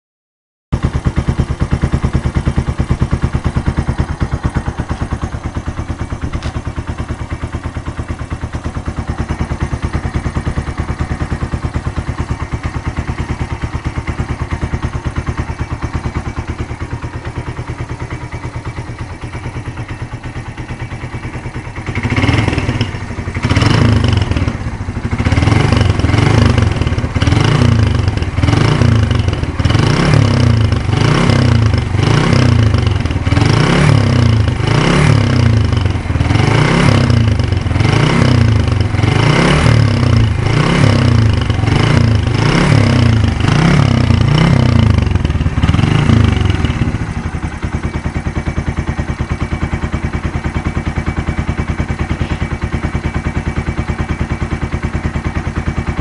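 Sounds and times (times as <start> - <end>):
motorcycle engine idling: 0.7 - 56.0
engine revving throttle blips: 21.9 - 47.2.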